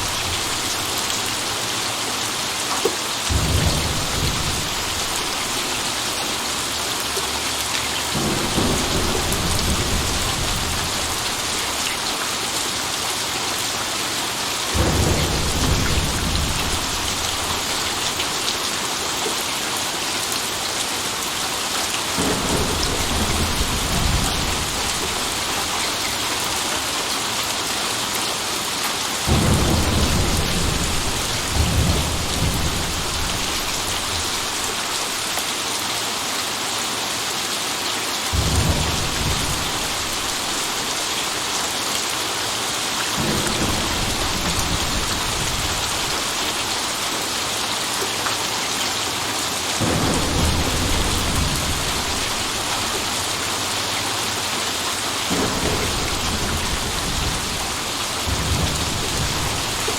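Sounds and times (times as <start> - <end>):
thunder rumbling: 0.0 - 1.5, 3.3 - 12.1, 14.7 - 18.6, 22.1 - 26.6, 29.3 - 35.3, 38.4 - 41.6, 43.2 - 47.0, 49.8 - 53.9, 55.3 - 59.9
heavy rain falling: 0.0 - 59.9.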